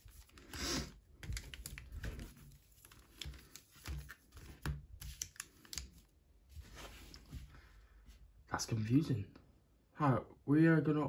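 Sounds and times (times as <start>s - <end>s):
cards clicking on a table: 1.2s - 6.0s.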